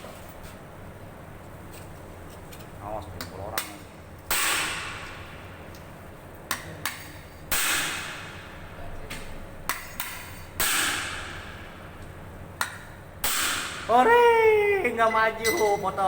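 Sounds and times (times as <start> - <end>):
hammer striking metal: 15.0 - 16.0.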